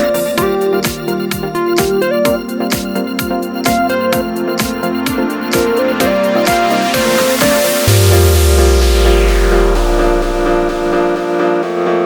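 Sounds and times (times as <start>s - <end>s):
sustained synth chords: 3.3s - 11.5s
falling synth sweep: 5.4s - 11.3s
deep bass note: 7.9s - 11.2s.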